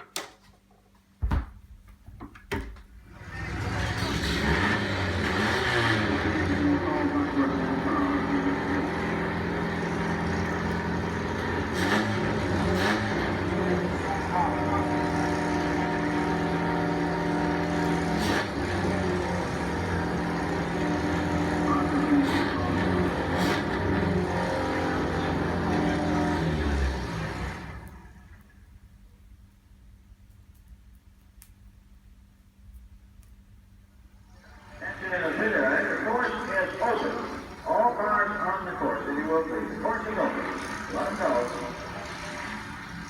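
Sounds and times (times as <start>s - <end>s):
thump: 1.2s - 1.6s
sports car engine racing: 3.0s - 28.4s, 34.4s - 43.0s
click: 30.3s - 31.6s.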